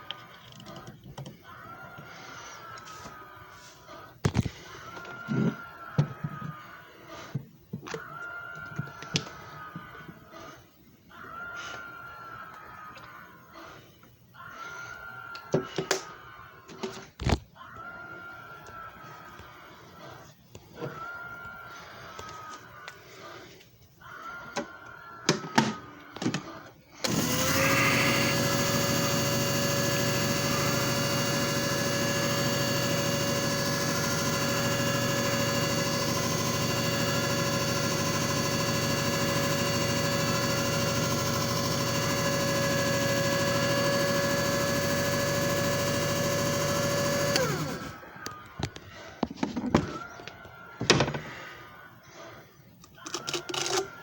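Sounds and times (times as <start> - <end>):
disc repair machine whirring: 27.0 - 48.8.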